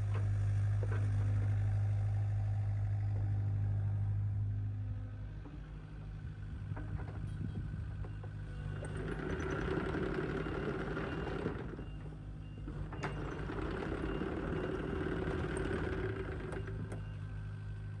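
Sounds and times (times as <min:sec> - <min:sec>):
mini excavator diesel engine running: 0:00.0 - 0:18.0.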